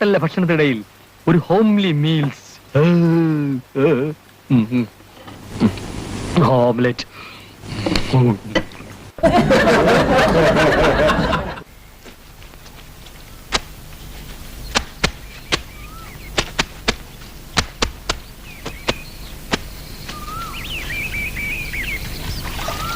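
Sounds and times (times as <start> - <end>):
faint bird chirps: 11.6 - 22.9
sharp taps or knocks: 14.7 - 15.7, 16.3 - 20.2.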